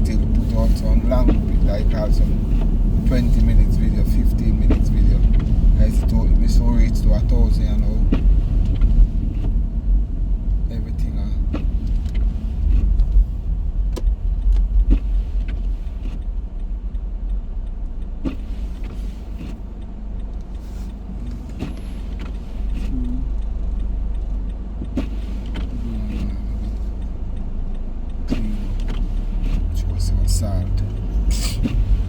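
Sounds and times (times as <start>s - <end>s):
low road noise rumble: 0.0s - 32.0s
light clicks and knocks: 0.2s - 9.6s.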